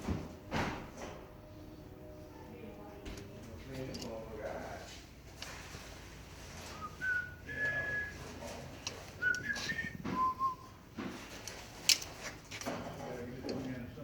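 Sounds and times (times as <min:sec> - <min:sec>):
man whistling: 0:06.7 - 0:08.2, 0:09.2 - 0:10.7.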